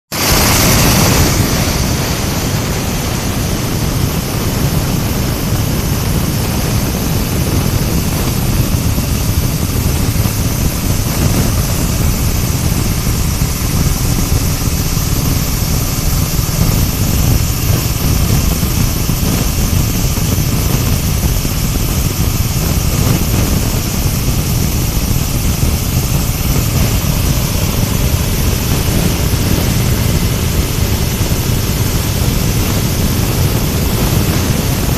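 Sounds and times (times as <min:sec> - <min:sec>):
grinding machine roaring: 0:00.1 - 0:34.9.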